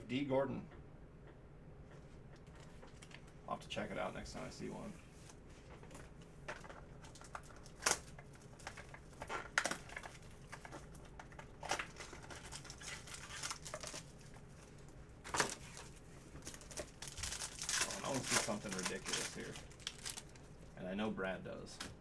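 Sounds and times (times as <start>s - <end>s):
cards and wrappers rustling: 4.0s - 20.8s.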